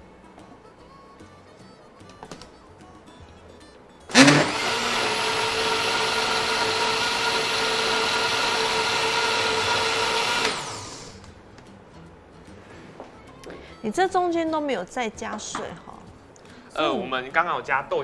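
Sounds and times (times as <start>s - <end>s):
blender whining: 4.1s - 11.3s.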